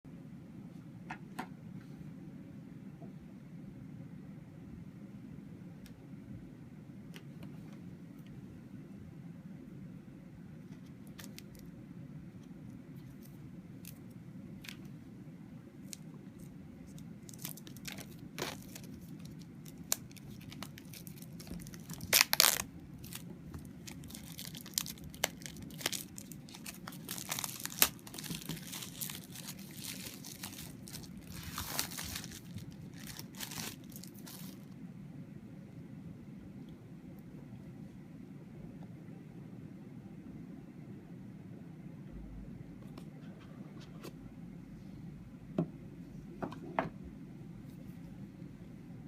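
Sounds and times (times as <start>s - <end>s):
steady low hum: 0.1s - 49.0s
plastic wrapping tearing and crinkling: 15.8s - 34.7s.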